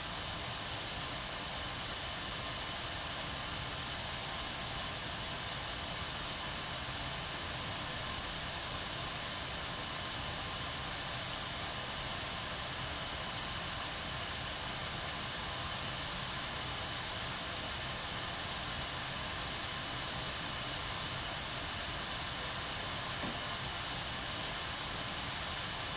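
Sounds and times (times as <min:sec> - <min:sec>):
kettle boiling: 0:17.1 - 0:25.9.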